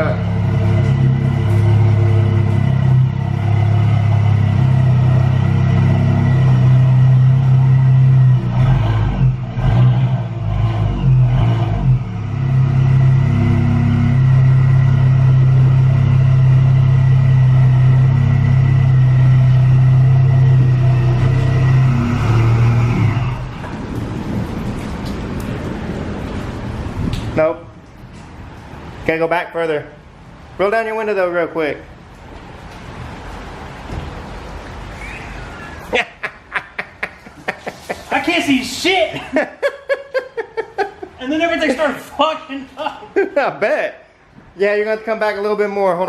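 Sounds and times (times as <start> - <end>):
car engine running low hum: 0.0 - 27.4.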